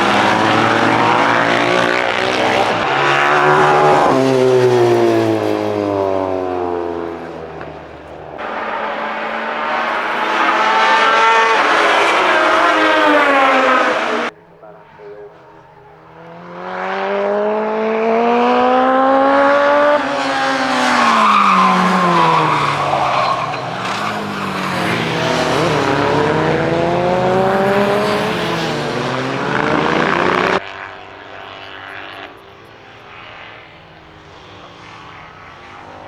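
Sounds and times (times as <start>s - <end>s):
racing sidecars at full throttle: 0.0s - 36.0s
faint distant engine: 20.6s - 36.0s.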